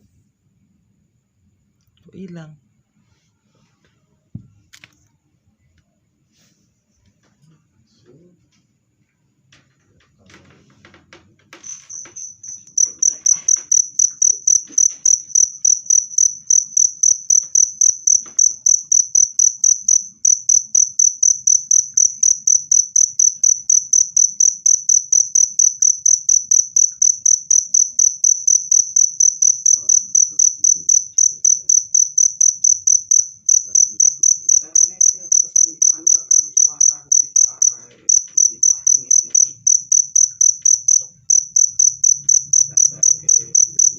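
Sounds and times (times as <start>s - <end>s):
cricket chirping: 9.0s - 43.9s.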